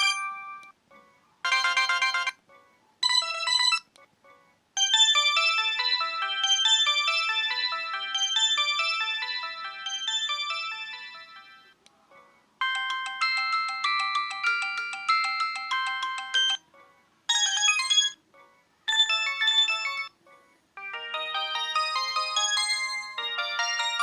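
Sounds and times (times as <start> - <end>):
synthesized ringtone melodies: 0.0 - 0.8, 1.4 - 2.4, 3.0 - 3.9, 4.8 - 11.8, 12.6 - 16.7, 17.3 - 18.2, 18.9 - 20.2, 20.8 - 24.0.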